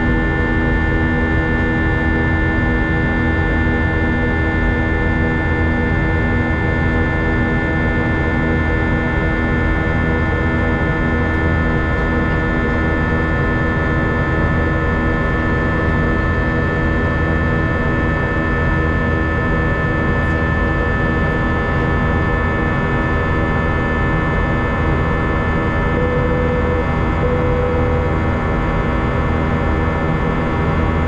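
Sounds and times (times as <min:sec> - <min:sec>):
jet engine cabin roar: 0:00.0 - 0:31.0
brief steady tone: 0:25.4 - 0:28.4.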